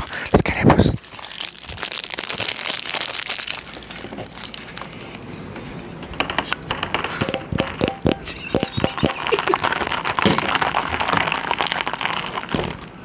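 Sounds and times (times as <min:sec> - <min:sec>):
crinkling and crackling: 0:00.0 - 0:13.0
sharp clicks: 0:06.6 - 0:09.5.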